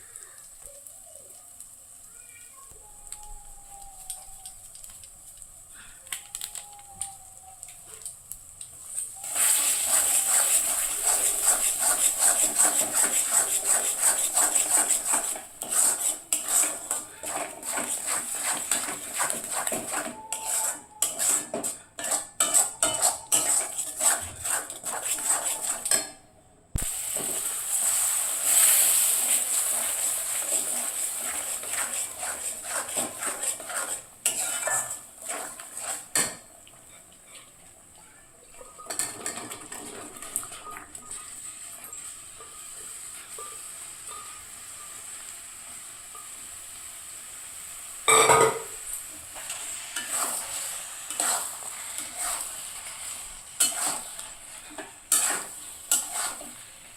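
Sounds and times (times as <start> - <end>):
high hiss: 0.0 - 15.6, 26.7 - 32.2
metal utensil scraping a pan: 9.0 - 26.3, 27.1 - 37.6, 38.6 - 45.1, 48.1 - 56.9.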